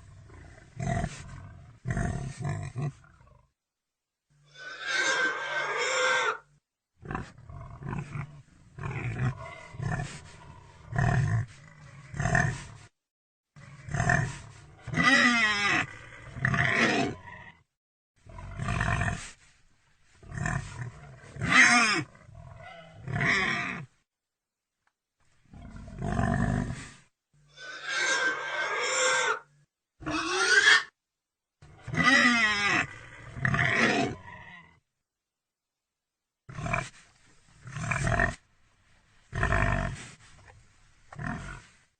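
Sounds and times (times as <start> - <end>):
pig calling: 4.5 - 6.5, 21.4 - 23.8, 27.5 - 30.9, 31.8 - 34.6.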